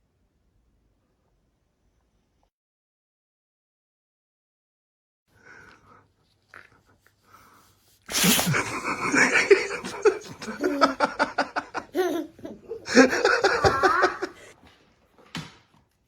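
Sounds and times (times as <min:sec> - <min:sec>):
people laughing hard: 0:08.3 - 0:14.6.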